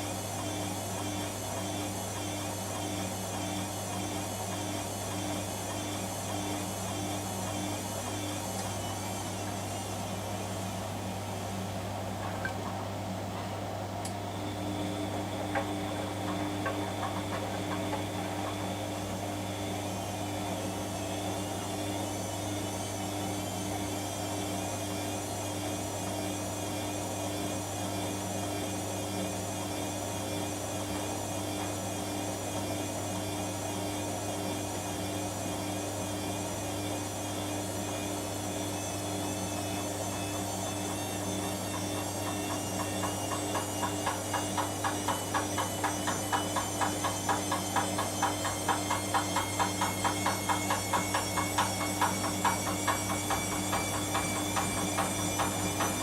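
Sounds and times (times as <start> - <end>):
washing machine running: 0.0 - 56.0
washing machine thumping: 41.8 - 56.0.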